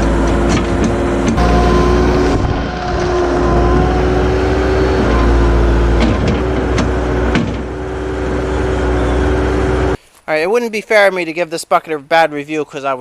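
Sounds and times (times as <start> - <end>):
hydraulic whine: 0.0 - 10.0
skid steer engine running: 0.0 - 10.0.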